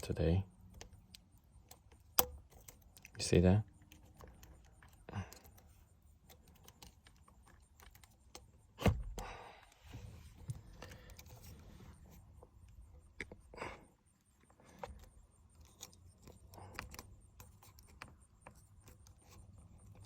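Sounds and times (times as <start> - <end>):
light plastic clicking and tapping: 0.6 - 9.4.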